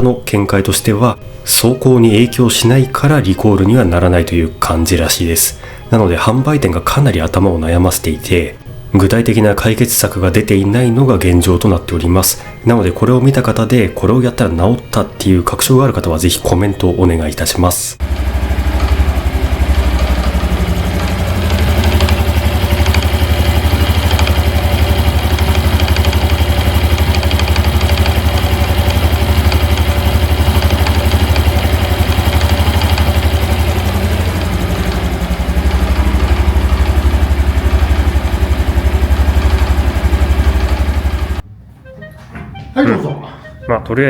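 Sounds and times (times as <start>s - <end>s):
engine rattle: 18.0s - 41.4s
motorcycle engine idling: 18.0s - 41.4s.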